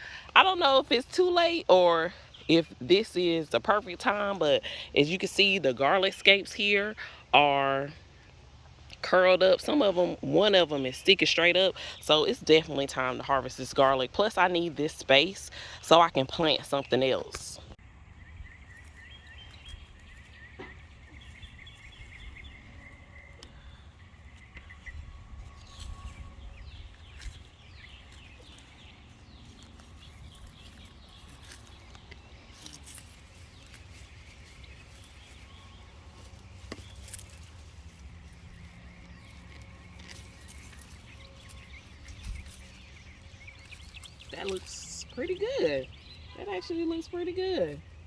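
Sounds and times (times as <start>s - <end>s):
birds chirping: 0.0s - 48.0s
rustling of soil and leaves: 0.0s - 48.0s.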